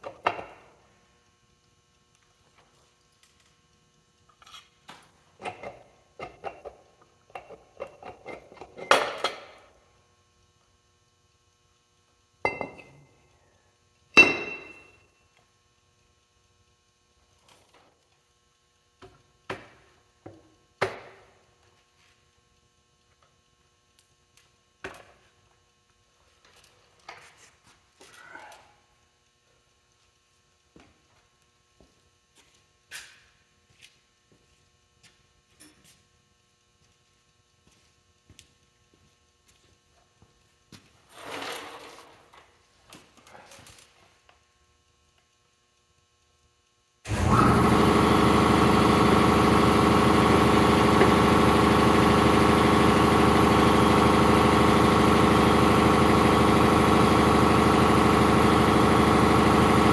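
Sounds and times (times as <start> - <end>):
metallic strikes with ring: 14.2 - 15.0.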